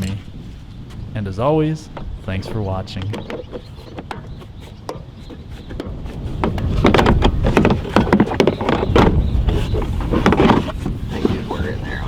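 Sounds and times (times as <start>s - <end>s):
wind buffeting microphone: 0.0s - 12.0s
rustling and clicks: 5.8s - 11.6s.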